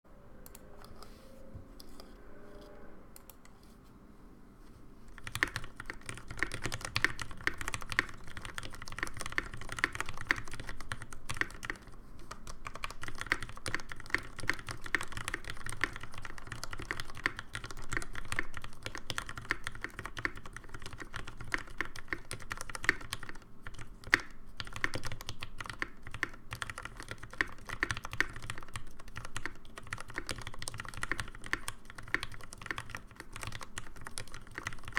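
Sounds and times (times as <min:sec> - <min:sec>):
mechanical keyboard typing: 0:05.1 - 0:34.9.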